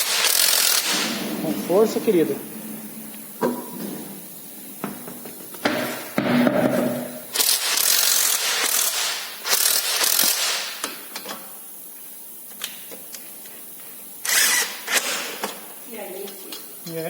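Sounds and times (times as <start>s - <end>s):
pneumatic impact wrench hammering: 0.0s - 1.2s, 4.9s - 11.3s, 14.2s - 15.6s.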